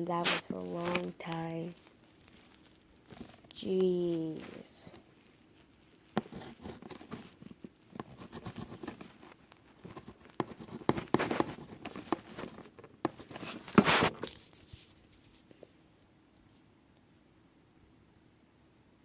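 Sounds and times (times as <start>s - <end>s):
rustling scrape: 0.2s - 7.6s, 11.0s - 15.8s.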